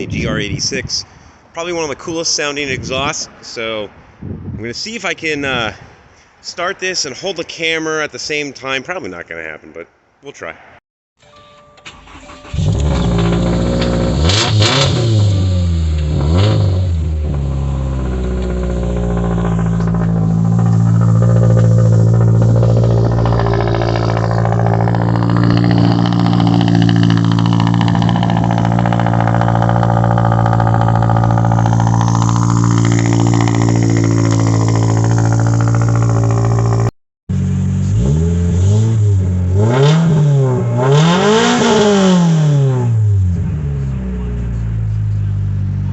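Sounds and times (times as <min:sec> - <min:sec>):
car engine idling and revving: 0:12.0 - 0:45.9.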